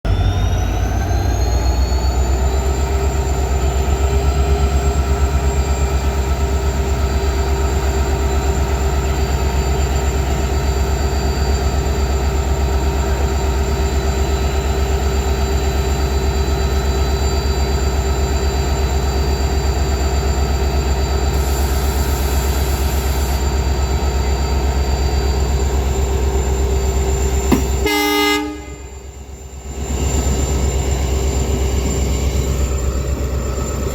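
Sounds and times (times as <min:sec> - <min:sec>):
diesel locomotive engine running: 0:00.0 - 0:33.9
locomotive horn blast: 0:27.5 - 0:29.1.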